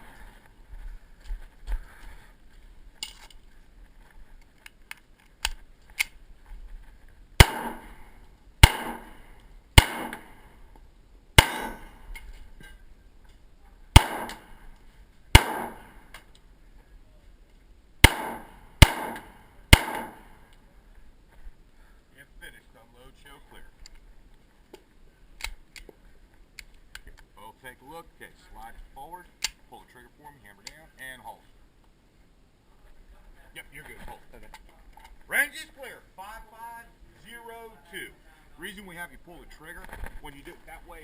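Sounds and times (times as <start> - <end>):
pistol shots: 7.4 - 10.5, 11.4 - 12.0, 14.0 - 14.6, 15.3 - 16.1, 18.0 - 20.4.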